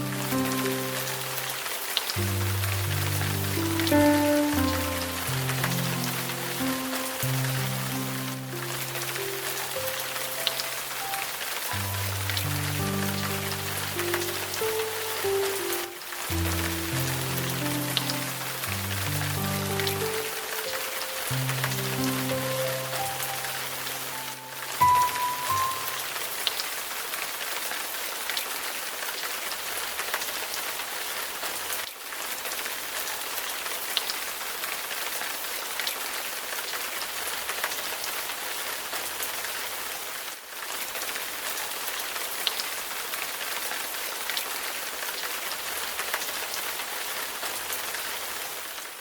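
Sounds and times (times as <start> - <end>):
steady rain hiss: 0.0 - 49.0
single raindrops ticking: 0.6 - 26.8.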